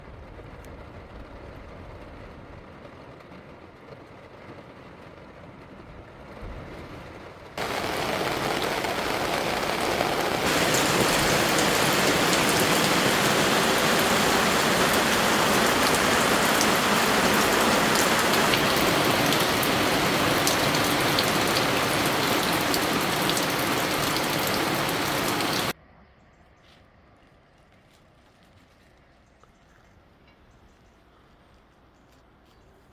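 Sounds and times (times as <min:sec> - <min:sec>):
torrential rain hiss: 0:06.2 - 0:25.8.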